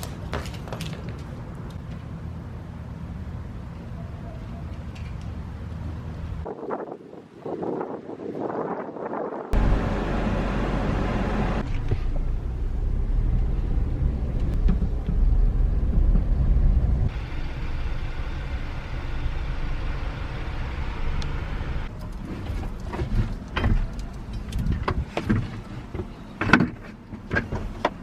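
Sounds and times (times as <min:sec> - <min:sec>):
car engine rumbling: 0:09.5 - 0:28.0.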